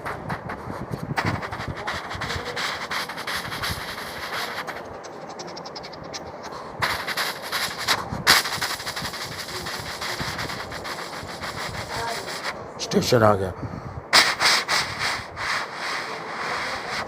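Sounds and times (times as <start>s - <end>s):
vocal train chuffing imitation: 0.0s - 12.6s
vocal hissing surges: 0.0s - 12.8s, 13.6s - 17.0s.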